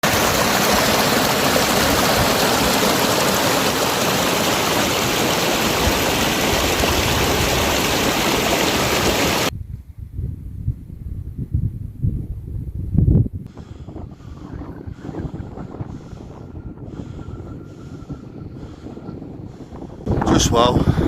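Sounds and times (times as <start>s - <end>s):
waterfall rushing: 0.0s - 9.5s.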